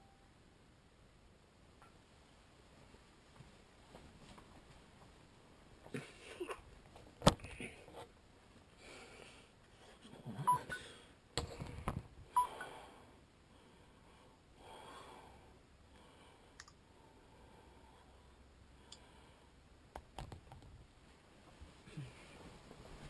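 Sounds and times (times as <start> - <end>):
man breathing in sleep: 12.4 - 19.5.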